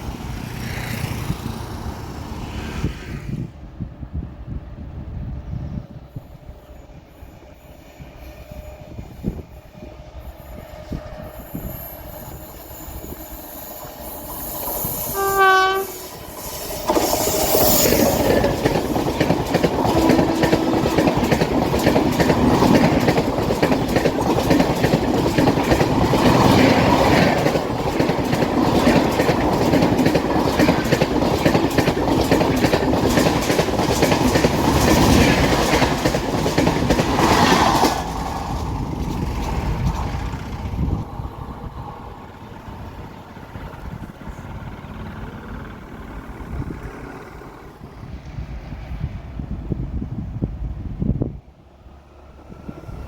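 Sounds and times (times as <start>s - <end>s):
train rumbling: 0.0s - 53.0s
train horn blast: 14.9s - 16.2s
wheels clattering over rail joints: 16.2s - 41.2s.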